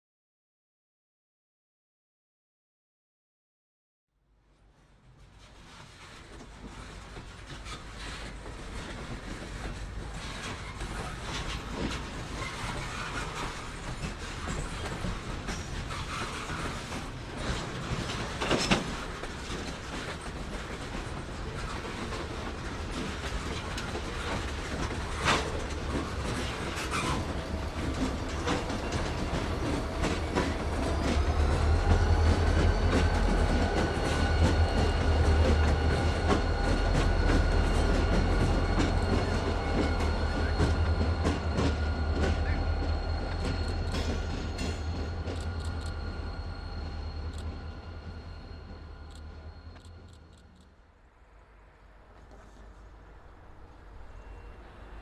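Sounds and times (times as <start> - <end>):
wheels clicking over rail joints: 5.6 - 46.0
diesel locomotive rumble: 6.8 - 50.5
locomotive whine: 7.8 - 55.0.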